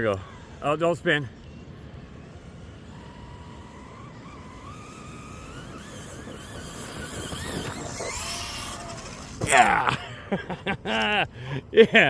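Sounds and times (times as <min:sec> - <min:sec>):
radio-controlled car motor whine: 0:00.0 - 0:09.5.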